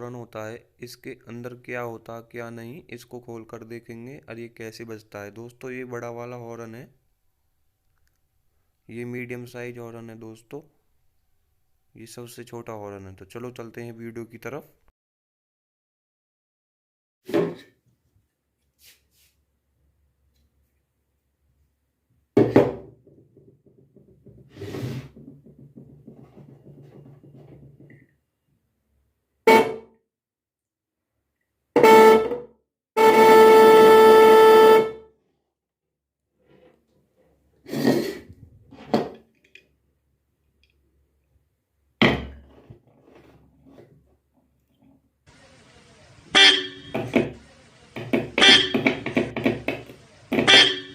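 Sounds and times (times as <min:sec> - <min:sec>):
bike horn knocking on hard surface: 0:31.8 - 0:32.5, 0:46.4 - 0:47.4, 0:48.0 - 0:49.8, 0:50.4 - 0:50.9.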